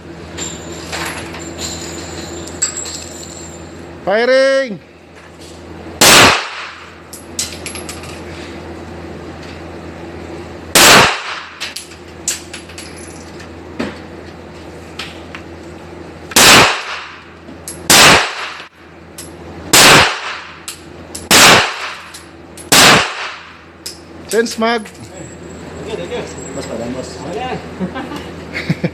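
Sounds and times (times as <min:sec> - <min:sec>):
gunshots: 0:06.0 - 0:06.8, 0:10.8 - 0:11.6, 0:16.4 - 0:17.2, 0:17.9 - 0:18.6, 0:19.7 - 0:20.6, 0:21.3 - 0:22.1, 0:22.7 - 0:23.5.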